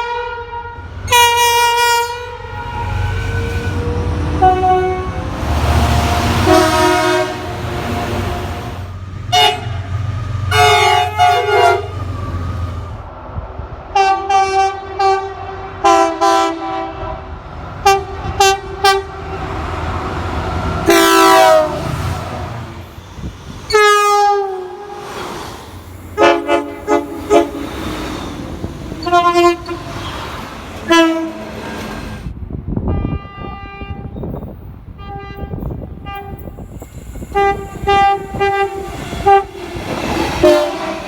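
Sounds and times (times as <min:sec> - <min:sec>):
train horn chord blasts: 0:00.0 - 0:12.0, 0:14.0 - 0:19.1, 0:20.9 - 0:22.0, 0:26.2 - 0:27.6, 0:29.0 - 0:29.9, 0:30.8 - 0:31.6, 0:40.4 - 0:41.0.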